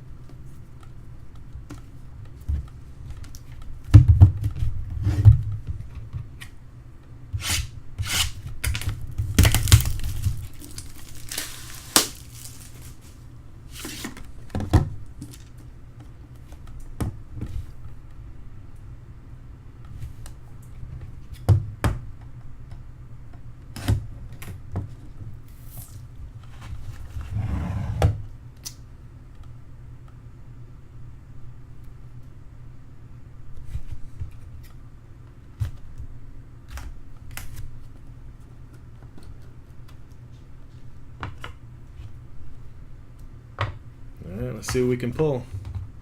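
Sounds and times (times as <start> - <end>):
plastic wrap tearing and crinkling: 8.0 - 13.2.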